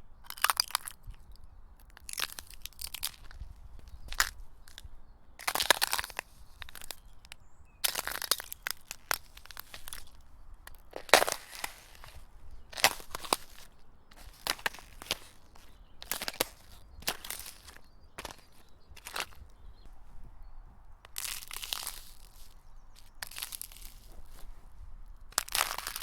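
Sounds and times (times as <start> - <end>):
footsteps crunching in snow: 5.4 - 7.2, 7.8 - 20.3, 21.1 - 26.0.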